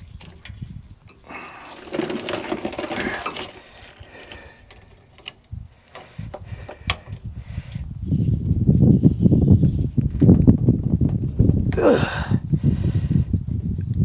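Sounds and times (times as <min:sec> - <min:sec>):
tools clicking and rattling on metal: 0:01.1 - 0:05.4.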